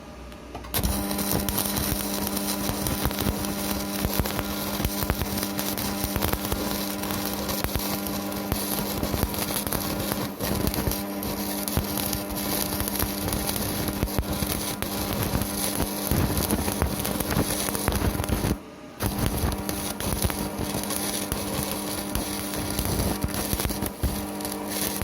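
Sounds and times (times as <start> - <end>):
welding inverter humming: 0.0 - 25.0
welding arc crackling: 0.7 - 25.0.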